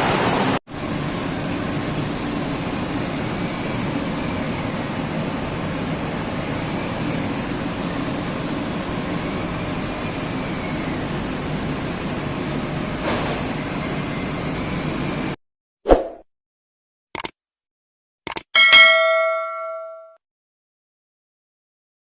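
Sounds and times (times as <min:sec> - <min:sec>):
factory machinery noise: 0:00.0 - 0:15.4.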